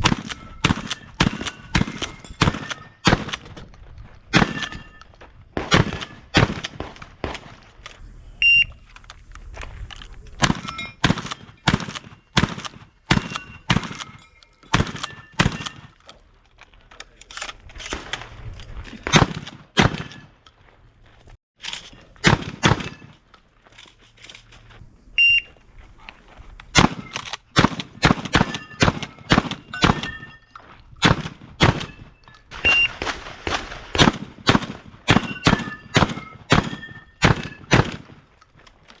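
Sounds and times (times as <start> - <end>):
shotgun shots: 0.0 - 3.6, 4.3 - 5.0, 5.6 - 7.6, 10.4 - 15.9, 19.0 - 20.3, 22.2 - 23.2, 26.7 - 30.4, 31.0 - 38.3.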